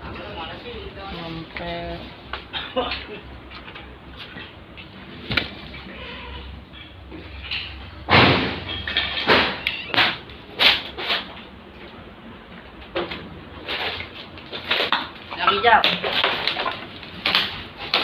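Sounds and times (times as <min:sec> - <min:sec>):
heavy demolition impacts: 0:08.1 - 0:11.2.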